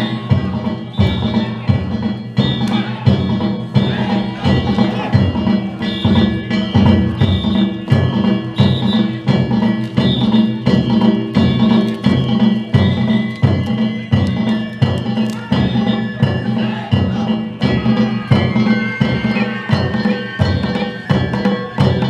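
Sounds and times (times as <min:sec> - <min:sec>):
taiko drum beating: 0:00.0 - 0:22.0
hand gongs clanging: 0:02.1 - 0:16.6.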